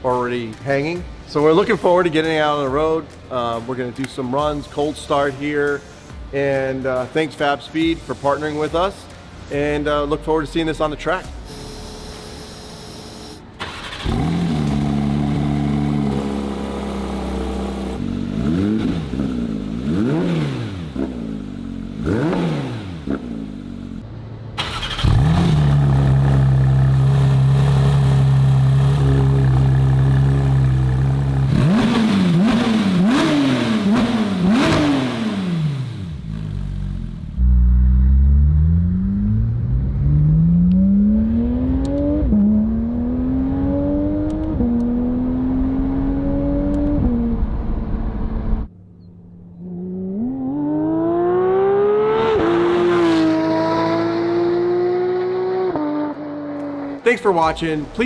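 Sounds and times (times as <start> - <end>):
sports car engine revving: 11.5 - 24.0, 24.6 - 48.7, 49.6 - 58.0
car accelerating: 11.6 - 24.0, 24.6 - 48.7, 49.4 - 58.0.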